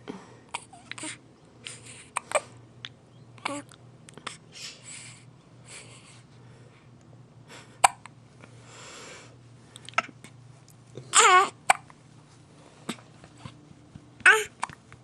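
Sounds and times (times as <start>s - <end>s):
baby hiccuping: 11.1s - 11.9s.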